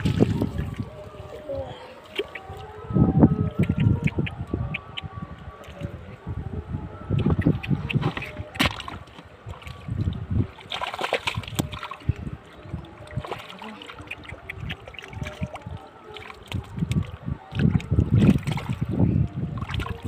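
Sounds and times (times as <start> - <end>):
splashing in shallow water: 0.0 - 2.9, 7.2 - 20.0.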